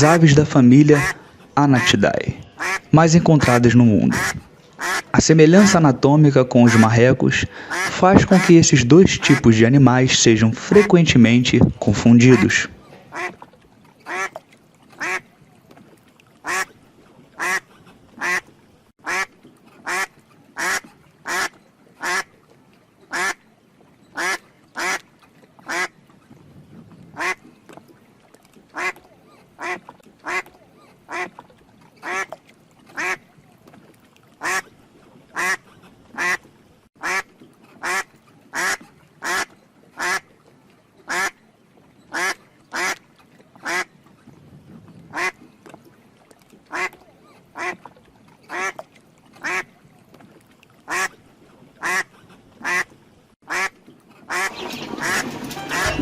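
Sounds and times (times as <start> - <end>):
duck quacking: 0.9 - 5.8, 6.6 - 7.0, 7.6 - 9.6, 10.6 - 10.9, 12.2 - 13.4, 14.1 - 14.4, 15.0 - 15.2, 16.4 - 16.7, 17.4 - 17.6, 18.2 - 18.4, 19.0 - 22.3, 23.1 - 23.4, 24.2 - 25.0, 25.7 - 25.9, 27.2 - 27.4, 28.8 - 29.0, 29.6 - 30.5, 31.1 - 31.4, 33.0 - 33.2, 35.4 - 36.4, 37.0 - 40.2, 41.1 - 41.4, 42.1 - 43.0, 43.6 - 43.9, 45.1 - 45.4, 46.7 - 47.0, 47.6 - 47.8, 49.4 - 49.7, 50.9 - 51.1, 51.8 - 52.9, 53.5 - 56.0.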